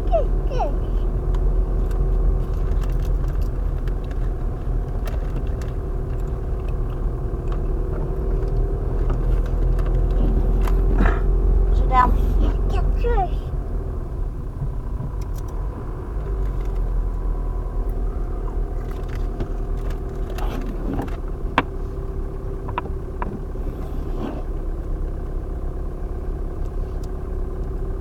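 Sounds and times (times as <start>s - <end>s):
car engine and road rumble: 0.0s - 28.0s
light clicks and knocks: 22.6s - 24.3s.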